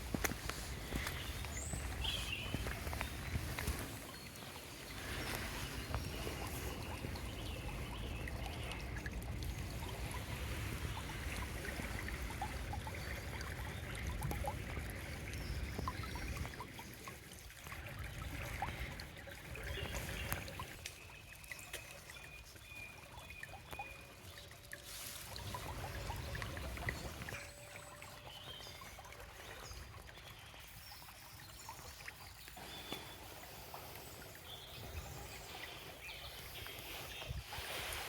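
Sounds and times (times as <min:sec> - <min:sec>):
small water splashes: 0:00.0 - 0:38.0
stream water trickling: 0:00.0 - 0:38.0.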